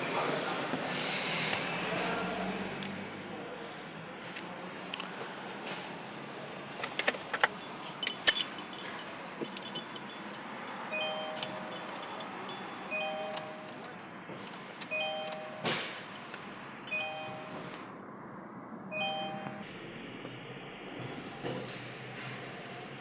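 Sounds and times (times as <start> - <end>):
keys jangling: 7.0 - 13.8, 14.5 - 17.4.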